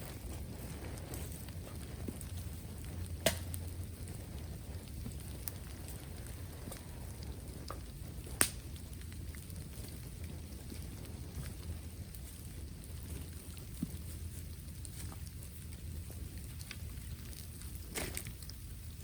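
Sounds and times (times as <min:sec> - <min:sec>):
burning bamboo crackling: 0:00.0 - 0:19.0
low steady rumble: 0:00.0 - 0:19.0
bamboo sharp loud pops: 0:03.2 - 0:03.5.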